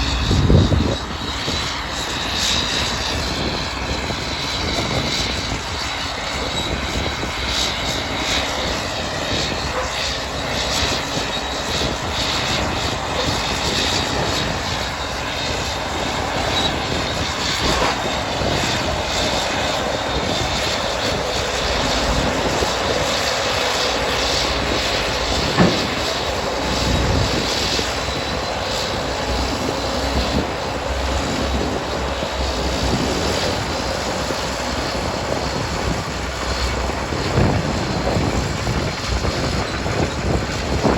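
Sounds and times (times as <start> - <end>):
diesel tractor engine running: 8.4 - 40.7
sharp knock: 25.6 - 26.1.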